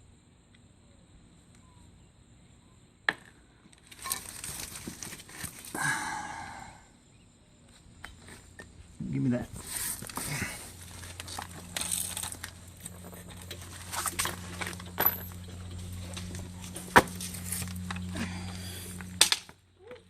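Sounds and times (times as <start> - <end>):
steady low hum: 0.0 - 20.0
hand tools clicking and rustling: 9.8 - 19.5.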